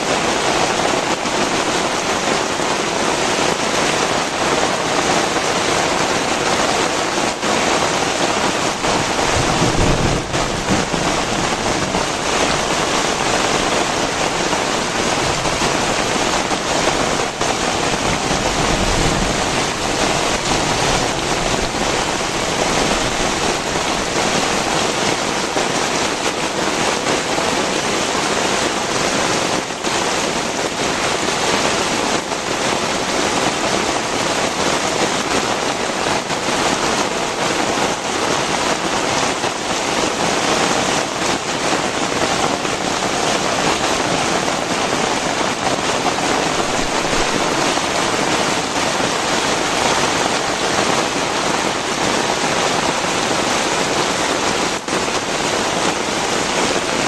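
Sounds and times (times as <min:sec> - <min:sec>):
heavy rain pouring: 0:00.0 - 0:57.0
low rumbles: 0:08.8 - 0:24.7.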